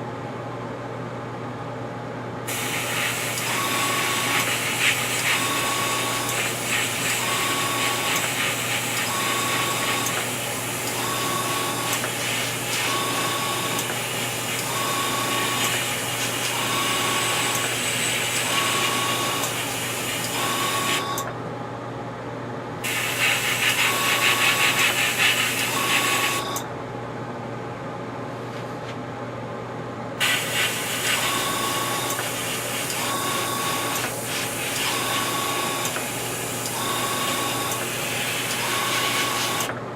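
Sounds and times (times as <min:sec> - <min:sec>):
airbrush spraying air hiss: 0:02.5 - 0:05.4, 0:06.0 - 0:07.2, 0:07.8 - 0:10.4, 0:11.9 - 0:12.9, 0:22.8 - 0:26.4, 0:30.2 - 0:31.3, 0:34.2 - 0:34.9
air compressor humming: 0:02.5 - 0:21.7, 0:22.8 - 0:26.7, 0:30.2 - 0:39.9.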